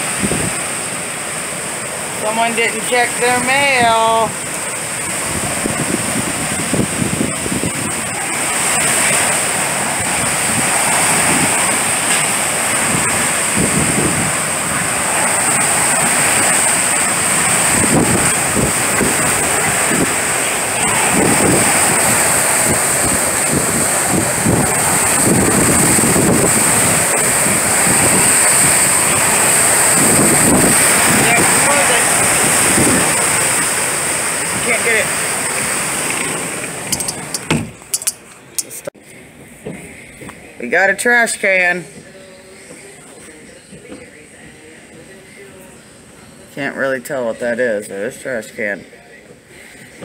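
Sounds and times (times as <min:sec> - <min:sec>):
wind buffeting microphone: 0:00.0 - 0:01.0, 0:03.0 - 0:37.9
strong wind with rain: 0:00.0 - 0:42.6.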